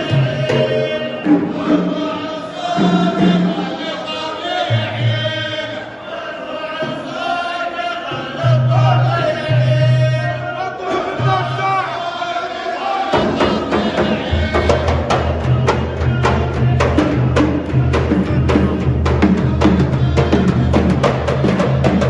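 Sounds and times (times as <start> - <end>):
men chanting in unison: 0.0 - 22.0.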